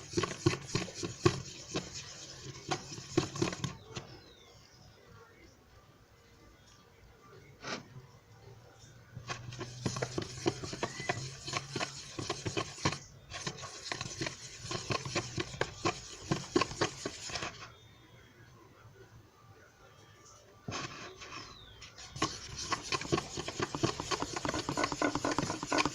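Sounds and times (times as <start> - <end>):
sticky dough clicking while mixed: 22.2 - 25.9.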